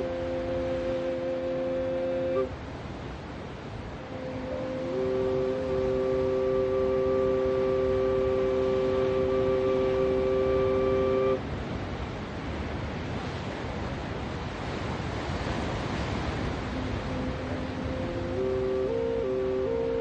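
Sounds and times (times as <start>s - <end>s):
flute holding long note: 0.0s - 2.6s, 4.0s - 11.4s, 16.6s - 20.0s
sea waves: 0.0s - 20.0s.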